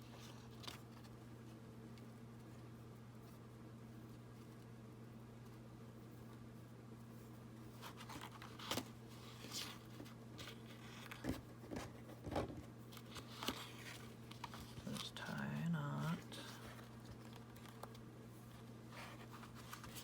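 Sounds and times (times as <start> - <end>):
steady low hum: 0.0 - 20.0
paper rustling: 7.8 - 12.1, 12.9 - 20.0.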